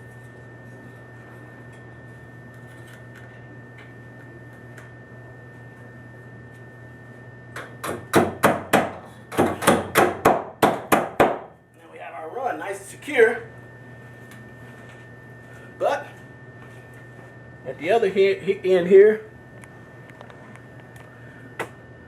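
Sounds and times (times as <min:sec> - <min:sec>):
steady low hum: 0:00.0 - 0:22.0
hammer knocking nails into wood: 0:07.8 - 0:11.5.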